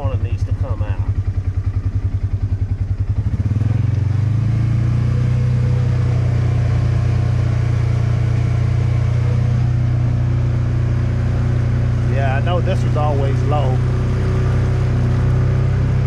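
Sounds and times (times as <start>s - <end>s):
engine running with pulsing beat: 0.0s - 16.0s.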